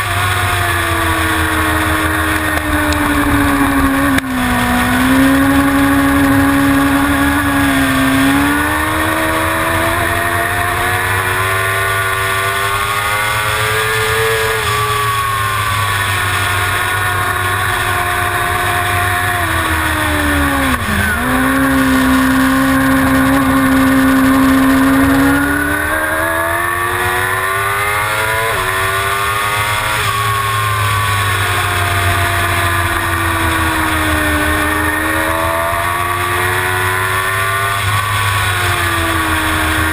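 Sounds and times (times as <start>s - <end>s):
motorcycle engine at racing revs: 0.0s - 39.9s
wind noise: 0.8s - 10.2s.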